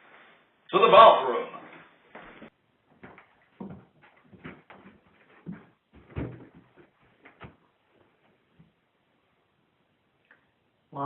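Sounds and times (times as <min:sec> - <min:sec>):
footsteps thudding: 0:02.1 - 0:08.8.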